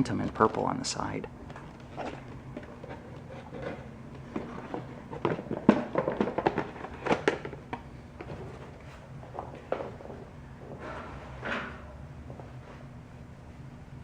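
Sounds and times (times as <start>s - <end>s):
air conditioning hum: 0.0s - 14.0s
packaging clicks and knocks: 3.6s - 8.4s.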